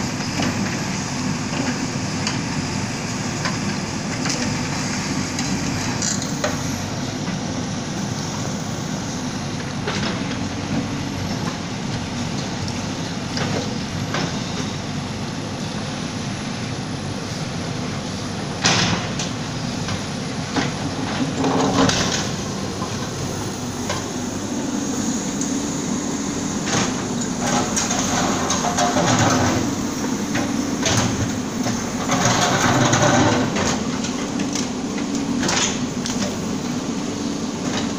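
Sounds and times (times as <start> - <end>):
bulldozer engine running: 0.0 - 37.9
demolition knocks and clanks: 26.6 - 34.7.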